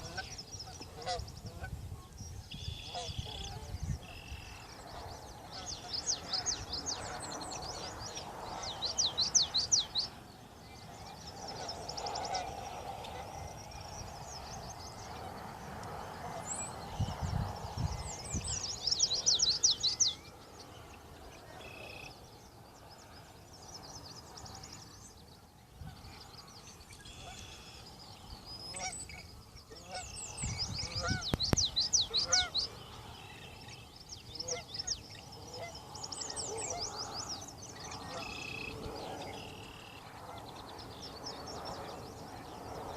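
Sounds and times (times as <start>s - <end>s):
geese honking: 0.0s - 1.8s, 2.7s - 8.7s, 11.5s - 13.5s, 28.7s - 30.2s, 30.8s - 31.4s, 32.1s - 33.2s, 34.4s - 35.8s, 37.8s - 40.4s.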